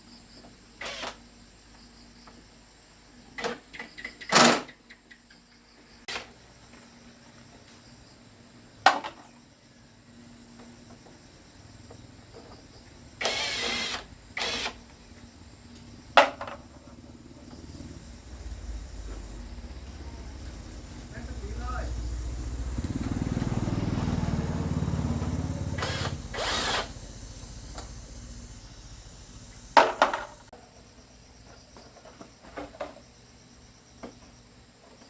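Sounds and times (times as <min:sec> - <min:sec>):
short rasping burst: 0:25.3 - 0:29.7.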